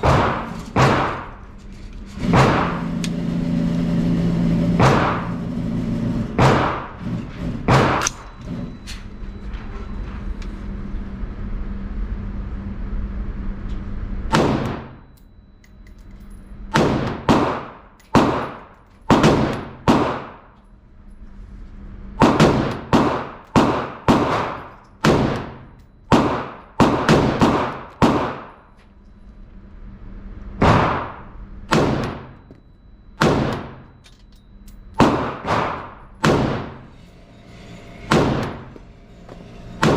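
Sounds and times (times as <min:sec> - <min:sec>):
rifle shots: 0:00.0 - 0:01.4, 0:02.2 - 0:03.6, 0:04.7 - 0:05.5, 0:06.2 - 0:07.0, 0:07.7 - 0:08.3, 0:16.8 - 0:20.5, 0:22.2 - 0:28.6, 0:30.6 - 0:32.4, 0:33.2 - 0:33.8, 0:35.0 - 0:36.9
low steady hum: 0:00.0 - 0:39.9.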